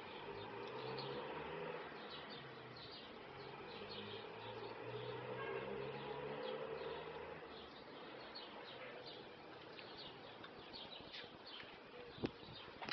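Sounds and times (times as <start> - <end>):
small birds chirping: 0.0 - 12.9.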